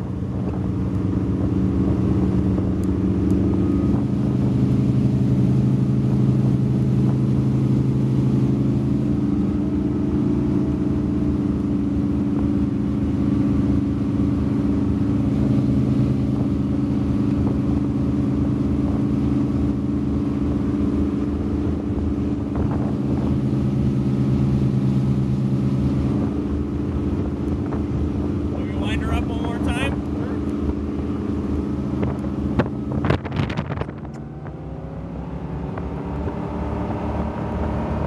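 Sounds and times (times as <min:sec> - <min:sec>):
powerboat engines running: 0:00.0 - 0:38.0.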